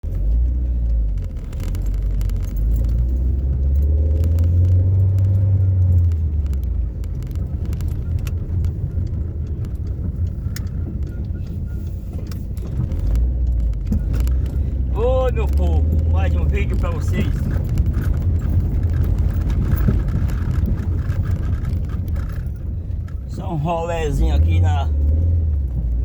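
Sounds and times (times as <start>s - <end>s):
car engine and road rumble: 0.0s - 26.0s
light rattling clicks: 0.1s - 23.4s.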